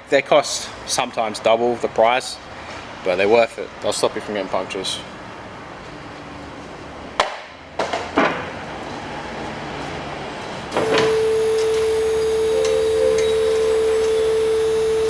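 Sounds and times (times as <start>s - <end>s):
high-pitched hum: 10.8s - 15.0s.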